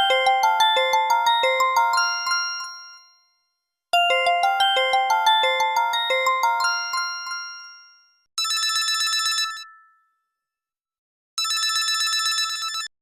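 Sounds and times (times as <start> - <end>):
phone ringtone trill: 0.0 - 3.4, 4.0 - 10.0
chime-like melody: 0.0 - 8.3.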